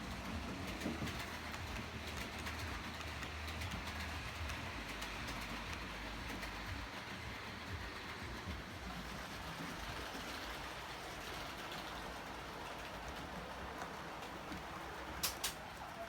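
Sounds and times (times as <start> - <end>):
model train rolling on track: 0.0 - 16.0.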